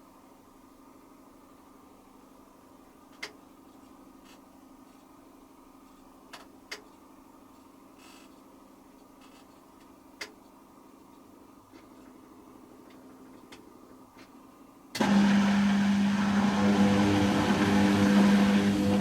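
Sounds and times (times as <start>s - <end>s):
washing machine humming: 15.0s - 19.0s.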